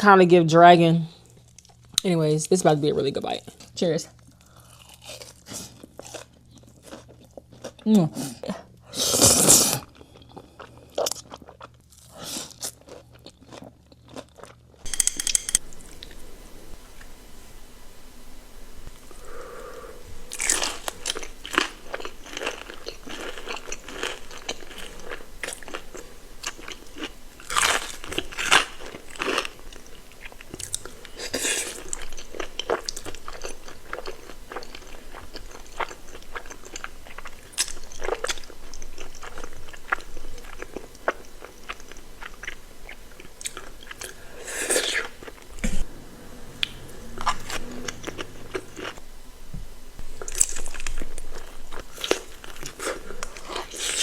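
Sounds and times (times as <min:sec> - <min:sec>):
crunching fried chicken: 0:04.3 - 0:07.9, 0:20.3 - 0:45.8, 0:50.1 - 0:54.0.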